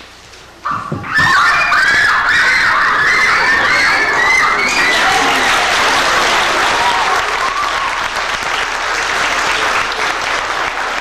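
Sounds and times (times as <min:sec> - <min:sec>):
audience applauding: 0:01.3 - 0:11.0.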